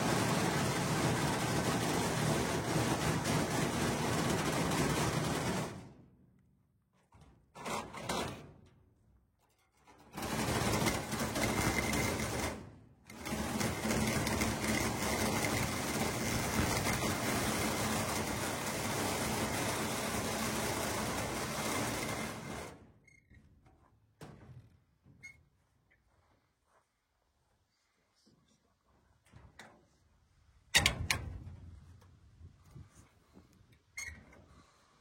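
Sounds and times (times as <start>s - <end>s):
power saw cutting: 13.1s - 22.7s.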